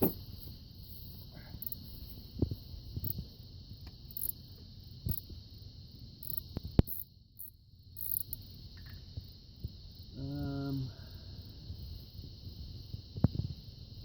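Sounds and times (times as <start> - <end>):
steady high-pitched hiss: 0.0 - 14.0.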